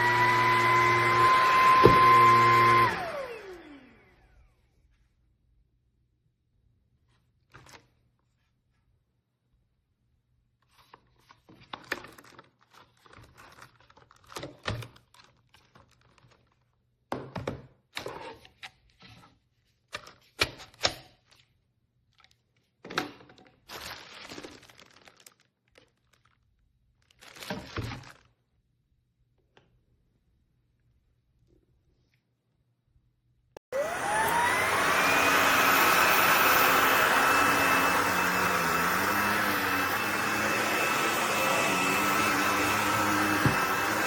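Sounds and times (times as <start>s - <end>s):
rustling: 23.6s - 28.4s.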